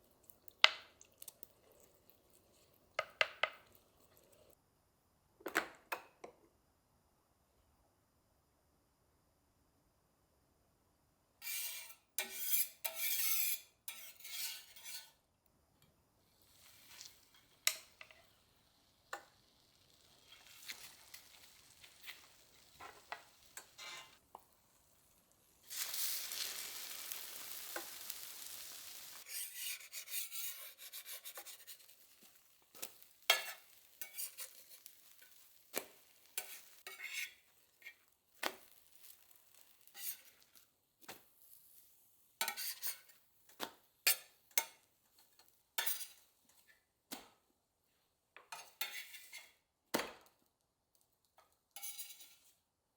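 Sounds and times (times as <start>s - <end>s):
utensil scraping in a pan: 11.4s - 15.2s, 16.4s - 18.5s, 19.1s - 24.2s, 25.6s - 47.2s, 48.4s - 49.6s, 51.8s - 52.6s
cutlery and dishes clinking: 32.8s - 35.4s, 51.8s - 52.5s.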